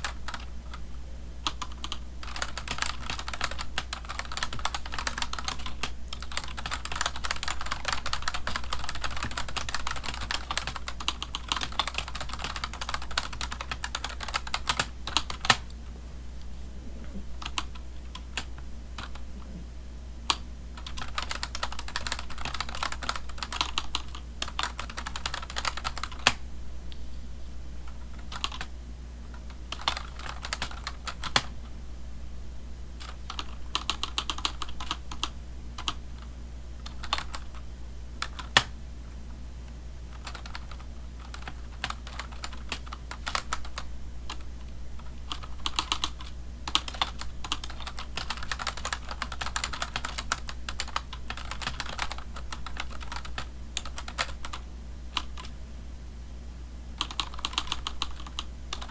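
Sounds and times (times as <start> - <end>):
typing on computer keyboard: 0.0 - 0.8, 1.4 - 15.6, 17.4 - 19.2, 20.3 - 26.4, 27.9 - 28.7, 29.3 - 31.5, 33.0 - 36.0, 36.8 - 37.6, 38.2 - 38.7, 40.1 - 44.4, 45.0 - 54.6, 57.0 - 58.9.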